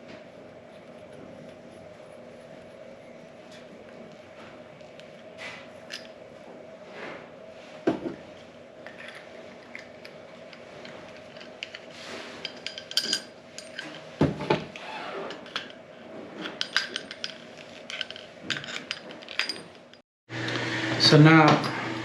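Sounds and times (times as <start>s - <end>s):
steady hum: 0.0s - 22.0s
metal fittings clinking: 8.9s - 14.1s, 16.4s - 19.9s.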